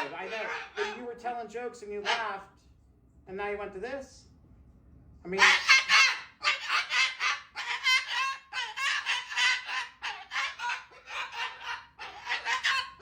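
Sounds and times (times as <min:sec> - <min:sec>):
parrot squawking: 0:00.0 - 0:01.2, 0:02.0 - 0:02.4, 0:05.4 - 0:13.0.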